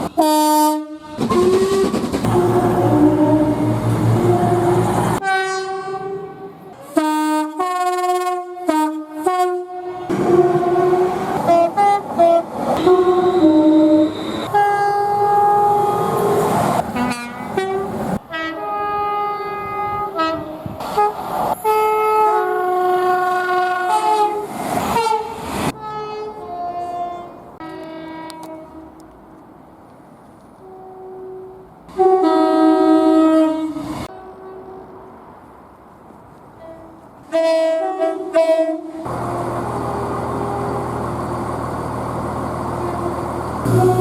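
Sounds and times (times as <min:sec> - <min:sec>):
train air horns: 0:00.0 - 0:29.0, 0:30.6 - 0:35.2, 0:36.6 - 0:41.4, 0:42.7 - 0:44.0.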